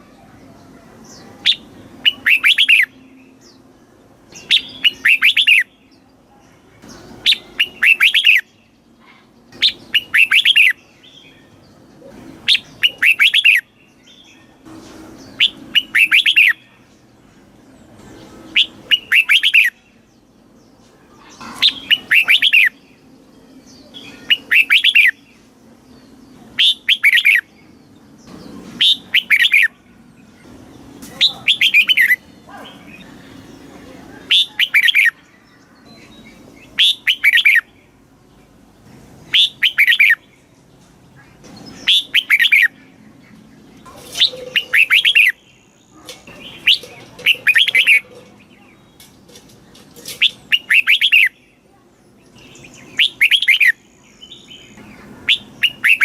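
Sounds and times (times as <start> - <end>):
bulbul singing warbled phrase: 1.0 - 3.4, 30.9 - 33.3, 41.8 - 43.2.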